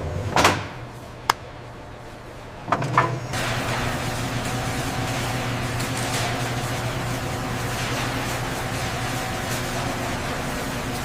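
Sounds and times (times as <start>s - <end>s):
machine engine humming: 3.2s - 11.0s.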